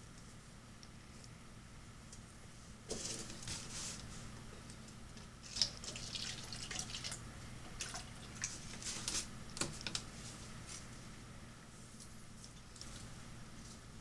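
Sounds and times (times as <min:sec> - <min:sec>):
water splashing and dripping: 0:05.5 - 0:07.2, 0:07.8 - 0:08.6.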